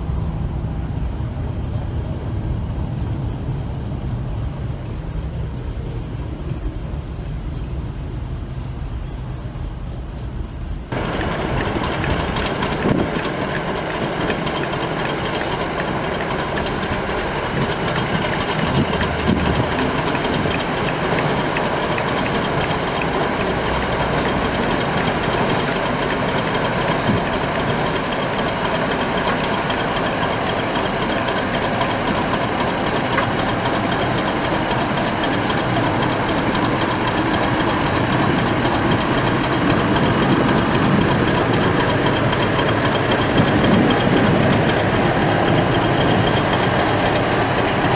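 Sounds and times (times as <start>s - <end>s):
locomotive engines droning: 0.0s - 47.9s
wheels clattering on rail joints: 10.7s - 47.9s.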